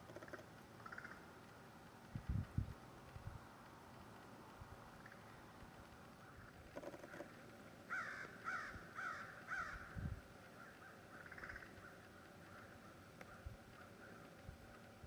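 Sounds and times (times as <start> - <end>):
low rasping crow call: 0.1 - 1.2, 7.9 - 14.3
crow cawing: 0.2 - 1.2, 7.9 - 14.2.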